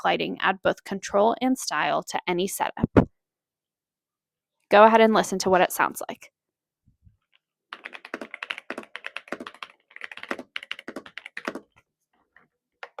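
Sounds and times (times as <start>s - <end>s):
mechanical keyboard typing: 7.7s - 11.7s.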